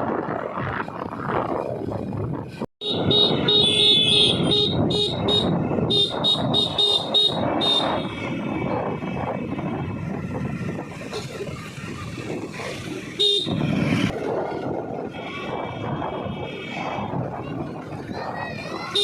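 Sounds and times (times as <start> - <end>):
road traffic rumble: 0.0 - 19.0
vehicle horn tooting: 2.8 - 8.1.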